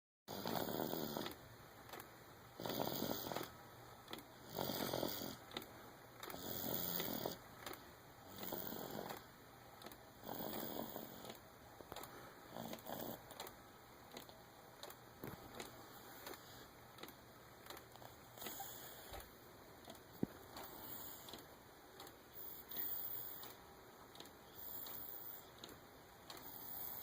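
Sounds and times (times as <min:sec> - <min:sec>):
rasping snores: 0:00.3 - 0:01.4, 0:02.6 - 0:03.5, 0:04.4 - 0:05.4, 0:06.3 - 0:07.4, 0:08.3 - 0:09.2, 0:10.2 - 0:11.4, 0:12.5 - 0:13.3, 0:22.4 - 0:23.5, 0:24.6 - 0:25.5, 0:26.4 - 0:27.0.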